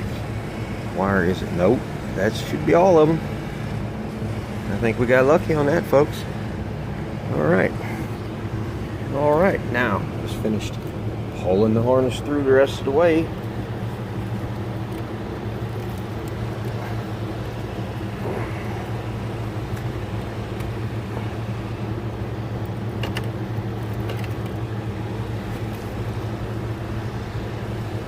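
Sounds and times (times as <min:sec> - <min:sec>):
low machine hum: 0:00.0 - 0:28.0
faint clicks and rustles: 0:13.3 - 0:28.0.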